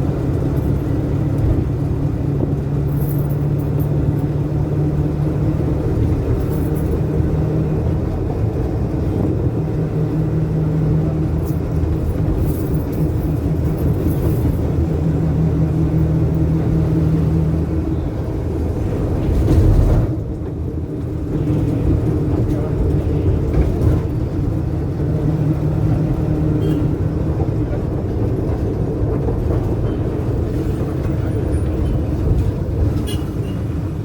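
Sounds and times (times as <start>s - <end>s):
bus engine drone: 0.0s - 34.0s
road rumble: 0.0s - 34.0s.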